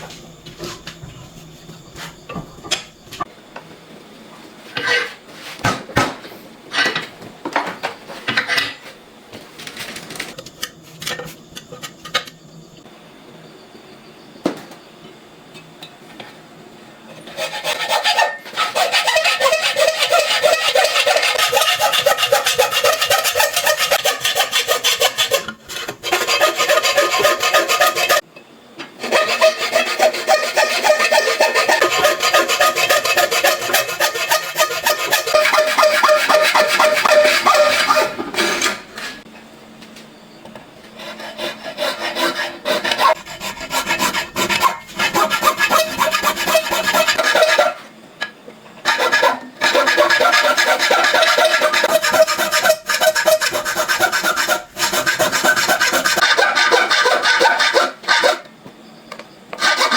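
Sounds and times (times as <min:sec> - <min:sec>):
rasping scraping on metal: 0:17.2 - 0:28.2, 0:29.0 - 0:39.2, 0:41.0 - 0:47.8, 0:48.9 - 0:58.4.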